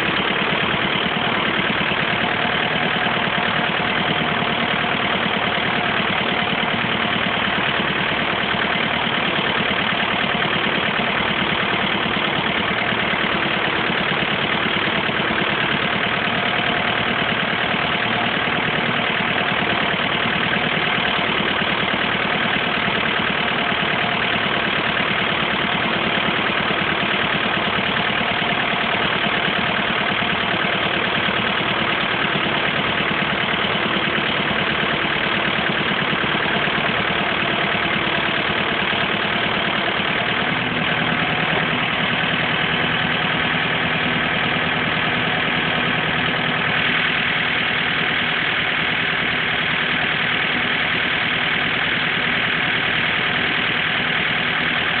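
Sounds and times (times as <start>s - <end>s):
engine idling: 0.0s - 55.0s.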